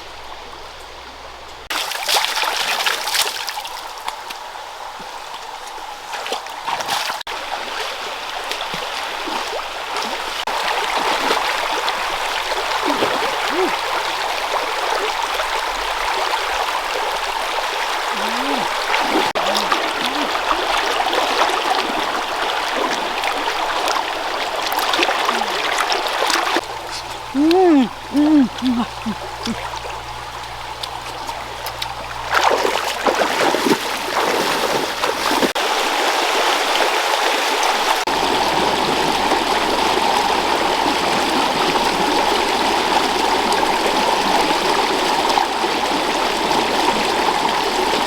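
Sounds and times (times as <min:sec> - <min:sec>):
stream water running: 0:00.0 - 0:48.0
faint voice-like sounds: 0:12.8 - 0:13.9, 0:18.0 - 0:21.9, 0:26.8 - 0:29.8.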